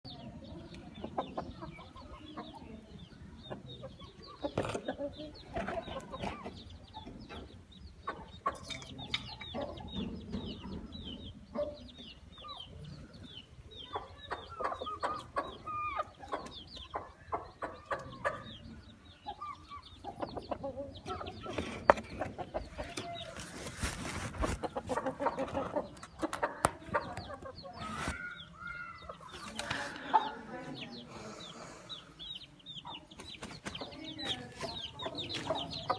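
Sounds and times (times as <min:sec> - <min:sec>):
chickens clucking: 0:00.0 - 0:35.9
rustling: 0:22.9 - 0:25.0.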